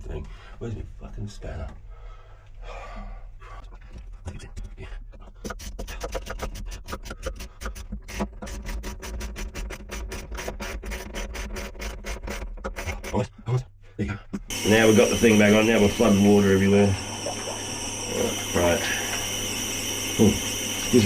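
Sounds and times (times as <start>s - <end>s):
low machinery hum: 14.5s - 21.0s.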